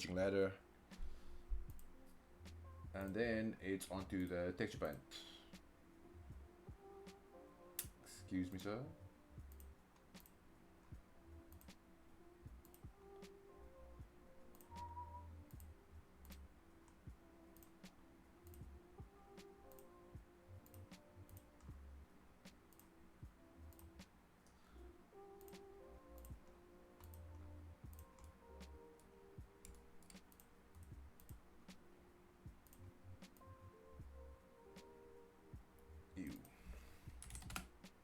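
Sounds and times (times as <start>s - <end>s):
soft background music: 0.0s - 38.0s
mouse and keyboard clicks: 37.2s - 38.0s.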